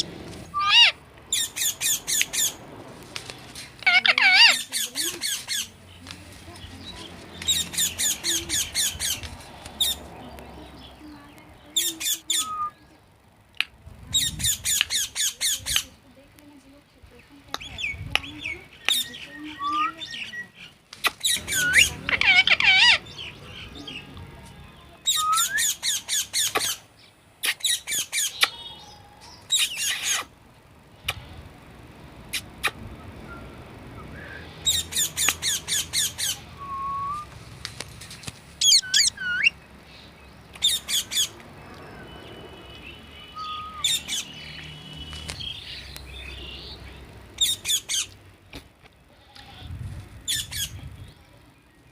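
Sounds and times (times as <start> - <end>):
parrot squawking shrill calls: 0.5 - 2.6, 3.8 - 5.7, 7.5 - 9.2, 11.8 - 12.8, 21.2 - 23.3, 25.0 - 26.8, 27.4 - 30.3, 34.6 - 37.3, 38.6 - 39.6, 40.6 - 41.4, 43.3 - 44.3
parrot chattering softly: 3.8 - 5.8, 21.1 - 23.1, 38.6 - 39.6.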